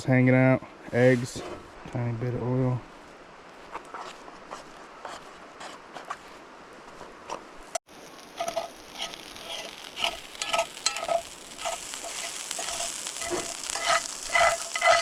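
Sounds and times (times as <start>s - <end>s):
eggs sizzling in a pan: 7.8s - 15.0s
utensil scraping a pan: 8.3s - 15.0s.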